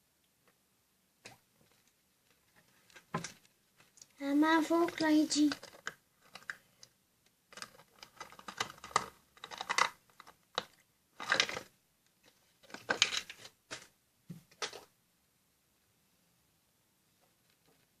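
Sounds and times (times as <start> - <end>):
plastic tub clicking and crackling: 1.2 - 13.9.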